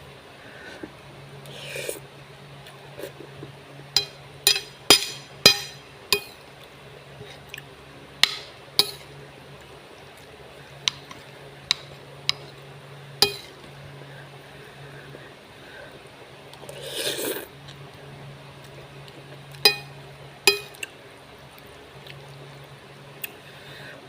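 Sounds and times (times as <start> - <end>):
metal utensil clinking against bowl: 4.0 - 6.4, 8.2 - 9.1, 13.2 - 13.5, 19.6 - 20.8.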